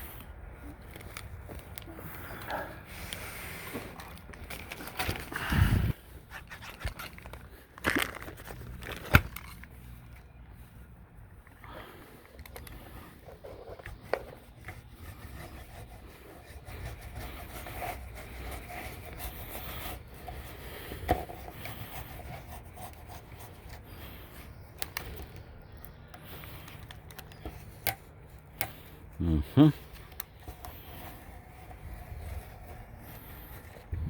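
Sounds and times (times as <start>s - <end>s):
roller rubbing and scraping screen: 12.8s - 25.4s, 30.3s - 34.0s.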